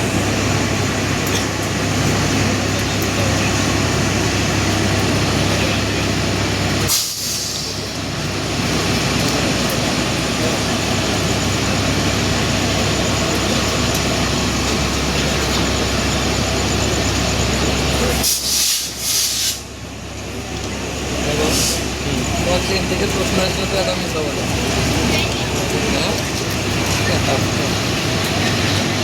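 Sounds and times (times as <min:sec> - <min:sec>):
train rumbling on rails: 0:00.0 - 0:29.0
short air hisses: 0:06.9 - 0:07.8, 0:18.2 - 0:19.7, 0:21.5 - 0:21.9.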